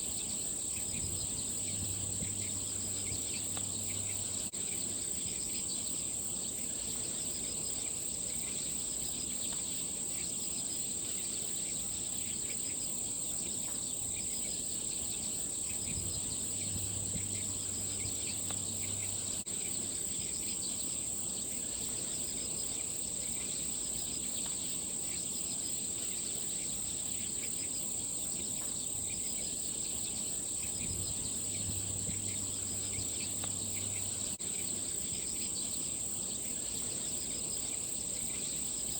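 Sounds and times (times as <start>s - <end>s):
faint low hum: 0.0s - 9.5s, 14.0s - 24.6s, 29.0s - 38.9s
insects trilling: 0.0s - 38.9s.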